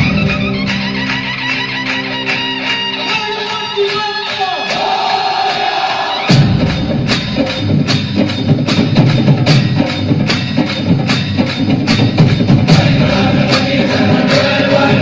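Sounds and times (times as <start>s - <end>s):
loud dance music: 0.0s - 15.0s
heavy bass beat: 4.0s - 15.0s.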